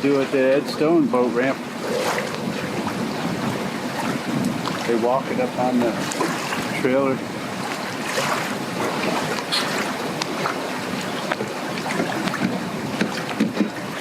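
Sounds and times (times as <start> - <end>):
waves splashing: 0.0 - 14.0
wind on microphone: 0.0 - 14.0
small knocks and taps: 12.0 - 13.7.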